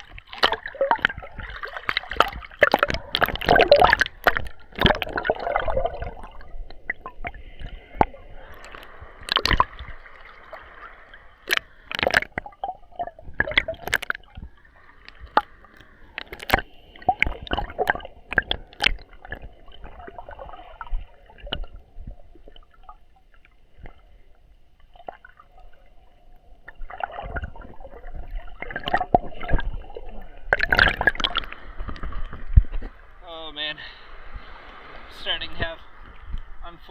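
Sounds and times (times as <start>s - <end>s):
sharp splashes and knocks: 0.0s - 22.9s, 26.7s - 33.0s
muffled water sloshing and gurgling: 0.0s - 36.9s.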